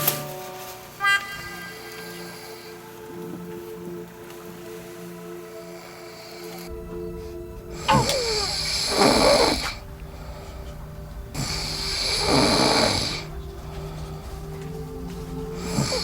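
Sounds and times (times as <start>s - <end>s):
soft background music: 0.0s - 16.0s
woman snoring: 7.7s - 10.7s, 11.3s - 14.4s, 15.5s - 16.0s.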